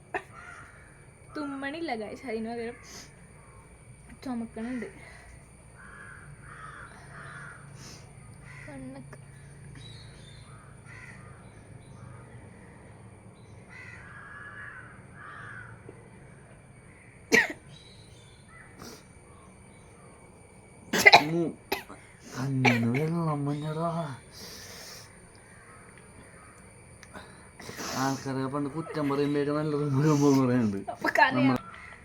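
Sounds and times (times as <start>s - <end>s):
crows cawing: 0.1s - 1.2s, 2.7s - 3.8s, 4.6s - 12.8s, 13.7s - 17.2s, 18.5s - 19.5s, 23.5s - 32.0s
loud sharp cough: 17.3s - 17.6s, 20.9s - 23.1s.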